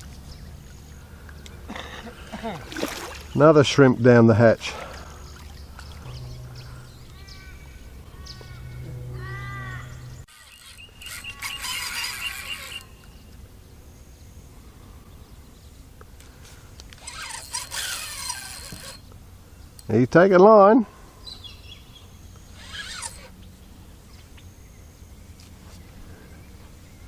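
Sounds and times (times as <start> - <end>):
birds calling: 0.0 - 20.0, 21.1 - 27.0
birds chattering: 0.3 - 13.4.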